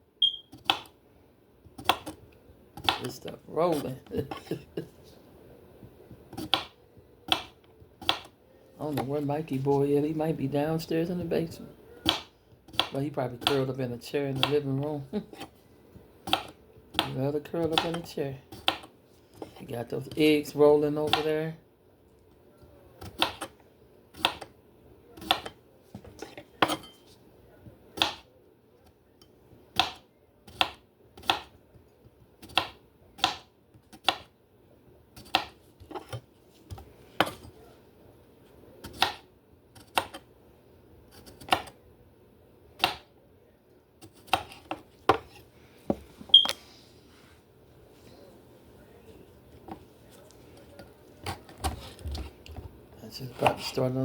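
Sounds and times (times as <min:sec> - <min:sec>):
knife chopping on cutting board: 0:01.8 - 0:02.2, 0:06.3 - 0:08.3, 0:12.0 - 0:13.6, 0:16.2 - 0:19.6, 0:23.0 - 0:23.5, 0:24.2 - 0:24.5, 0:25.2 - 0:26.9, 0:28.0 - 0:28.2, 0:29.8 - 0:31.6, 0:32.4 - 0:34.3, 0:35.2 - 0:37.5, 0:38.8 - 0:40.2, 0:41.1 - 0:41.8, 0:42.8 - 0:43.1, 0:44.0 - 0:46.0.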